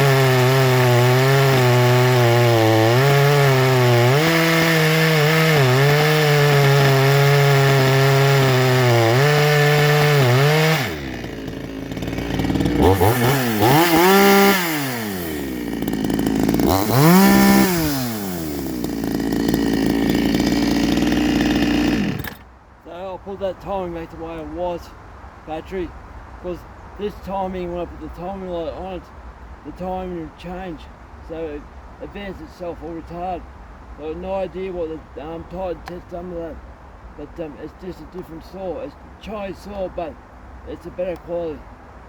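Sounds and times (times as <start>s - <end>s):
chainsaw running and revving: 0.0s - 22.4s.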